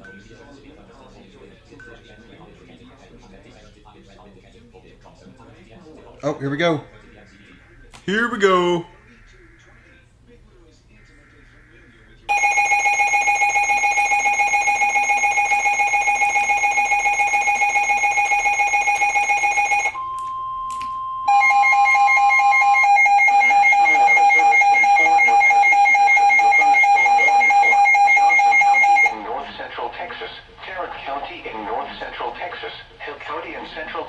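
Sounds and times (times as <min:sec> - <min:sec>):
loud electronic alert tone: 0:21.3 - 0:29.2.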